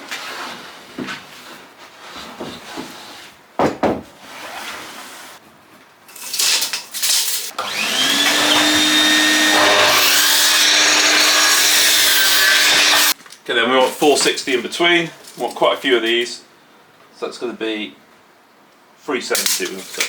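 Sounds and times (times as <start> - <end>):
electric saw motor whining: 7.5 - 13.2.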